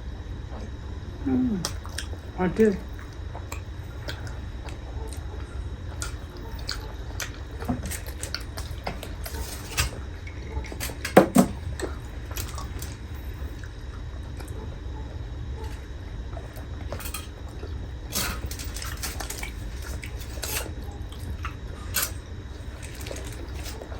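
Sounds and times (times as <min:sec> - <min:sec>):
steady low hum: 0:00.0 - 0:23.9
wet eating sounds: 0:00.5 - 0:23.9
cutlery clinking against plates: 0:16.9 - 0:17.4, 0:18.1 - 0:20.7.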